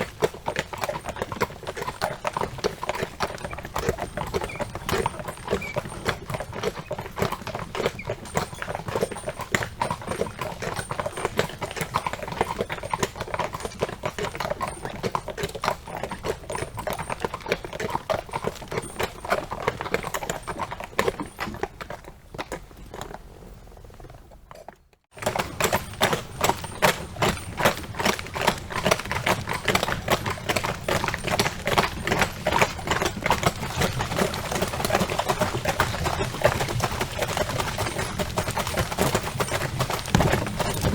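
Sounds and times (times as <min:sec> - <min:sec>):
horse hooves clip-clopping: 0:00.0 - 0:40.9
cart rolling: 0:25.2 - 0:40.9.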